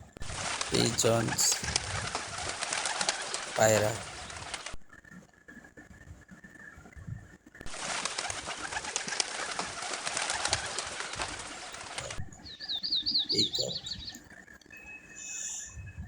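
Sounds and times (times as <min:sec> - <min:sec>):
pigeons cooing: 0:07.9 - 0:14.2.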